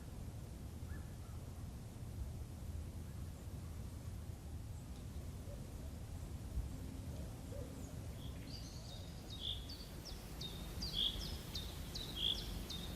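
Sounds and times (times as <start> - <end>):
low outdoor rumble: 0.0 - 12.9
small bird calling: 7.1 - 12.9.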